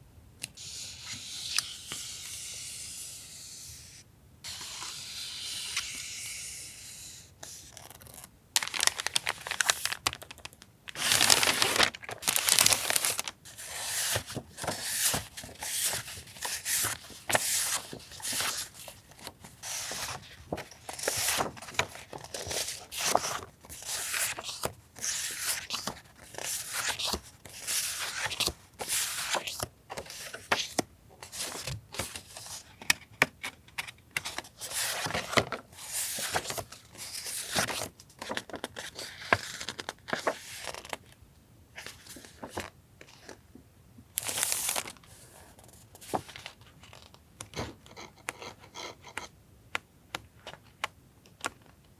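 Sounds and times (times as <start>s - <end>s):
paper sheets and stickers rustling: 7.4s - 41.0s, 41.8s - 43.4s, 44.2s - 48.0s.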